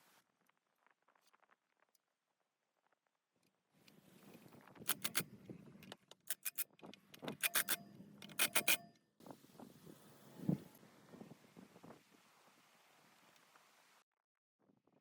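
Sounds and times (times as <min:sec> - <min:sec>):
metallic clicks and clinks: 0:04.8 - 0:09.0.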